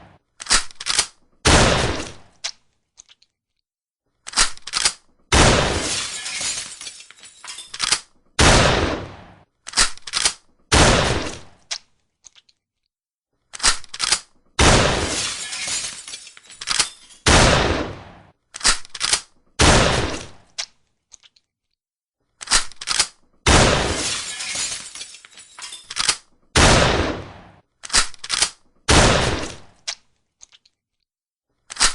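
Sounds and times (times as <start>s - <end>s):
shotgun blasts: 1.4s - 2.3s, 5.3s - 5.9s, 8.4s - 9.4s, 10.7s - 11.5s, 14.6s - 15.2s, 17.2s - 18.3s, 19.6s - 20.4s, 23.5s - 24.1s, 26.6s - 27.6s, 28.9s - 29.7s.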